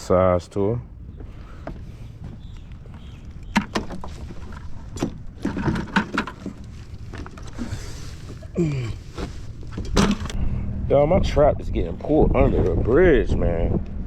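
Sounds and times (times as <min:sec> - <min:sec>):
wind rumbling on microphone: 0:09.4 - 0:14.0.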